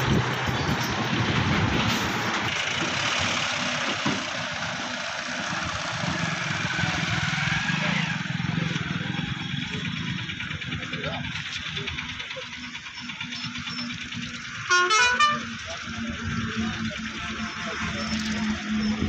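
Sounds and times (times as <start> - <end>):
dense background noise: 0.0 - 19.0
vehicle engine humming: 0.0 - 19.0.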